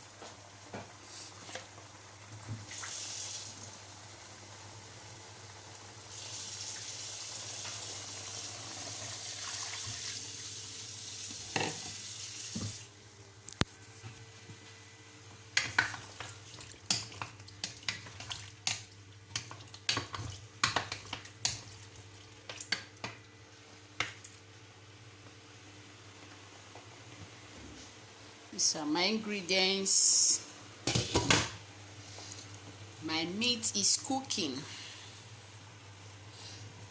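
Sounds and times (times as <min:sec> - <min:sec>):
water pouring into a pot: 0:02.6 - 0:03.7, 0:05.9 - 0:12.9.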